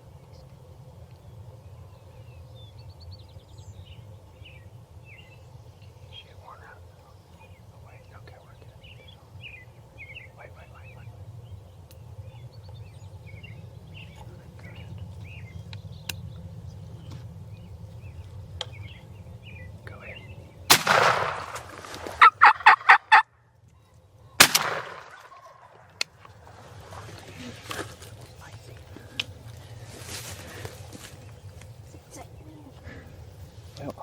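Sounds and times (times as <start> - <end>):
faint birdsong: 0.0 - 34.0
shotgun blasts: 20.7 - 22.4, 24.4 - 25.9
turkey gobbling: 22.0 - 23.3.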